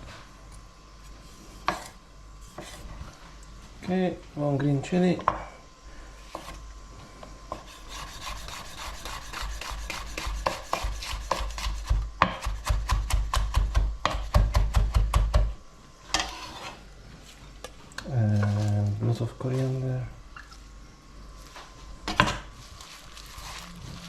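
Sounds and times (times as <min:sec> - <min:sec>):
knife chopping on wooden board: 0:07.5 - 0:15.5.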